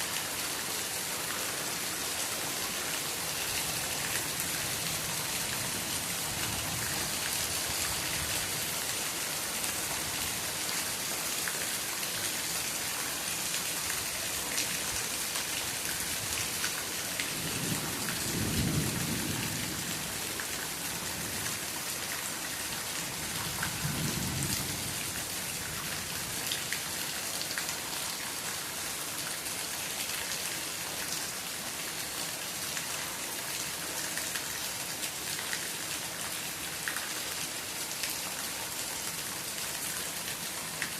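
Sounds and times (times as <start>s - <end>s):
rain pattering: 0.0s - 40.9s
low rumbles of thunder: 17.4s - 20.2s.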